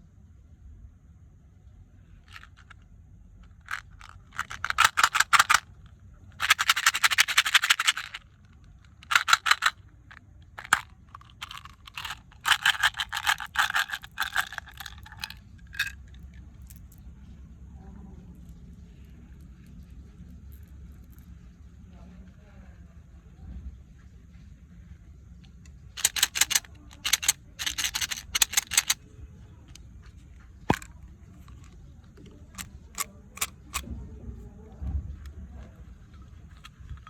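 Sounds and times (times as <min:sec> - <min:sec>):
plastic candy wrappers crackling: 0:06.4 - 0:08.2, 0:09.0 - 0:09.8, 0:10.6 - 0:15.9, 0:26.0 - 0:29.0.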